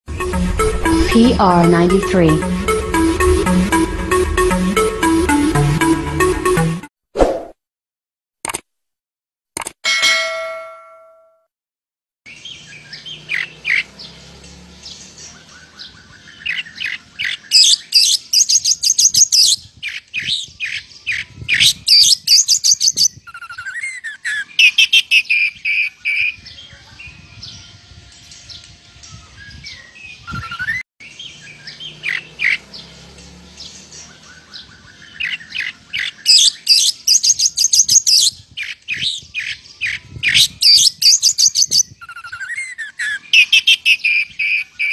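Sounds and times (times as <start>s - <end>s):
intro music tone: 0.1s - 6.9s
bird singing and chattering: 15.3s - 26.4s, 33.6s - 44.9s.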